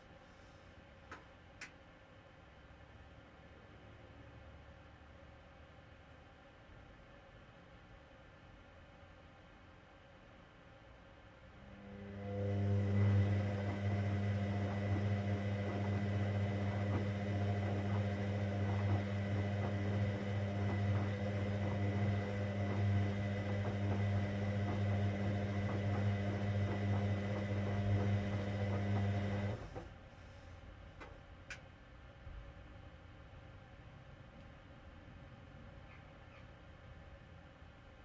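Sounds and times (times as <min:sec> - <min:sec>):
washing machine drain pump humming: 0:11.6 - 0:30.0.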